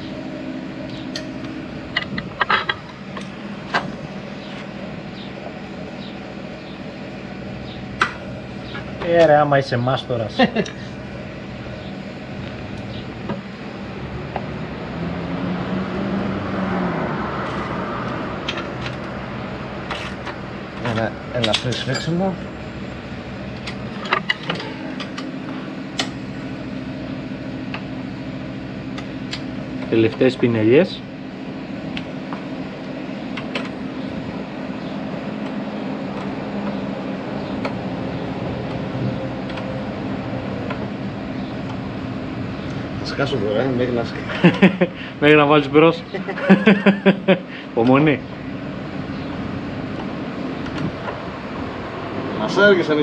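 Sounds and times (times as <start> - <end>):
low mechanical hum: 0.0 - 53.0
vehicle engine passing by: 13.9 - 19.9, 50.9 - 53.0.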